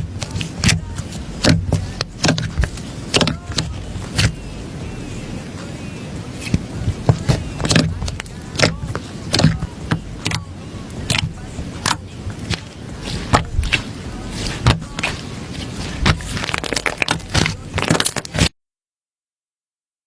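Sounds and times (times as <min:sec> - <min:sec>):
slime squished by hand: 0:11.0 - 0:18.5.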